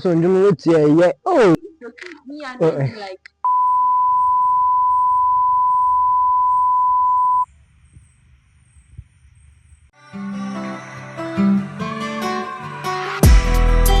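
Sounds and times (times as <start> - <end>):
censor beep tone: 3.4 - 7.5.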